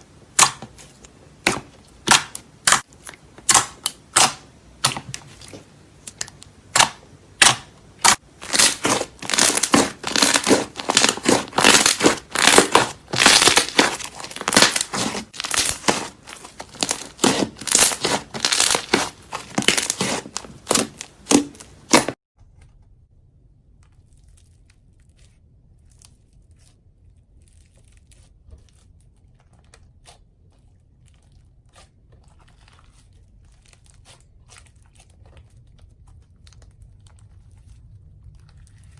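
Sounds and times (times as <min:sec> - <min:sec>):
slime crackling and popping: 0:00.4 - 0:22.2.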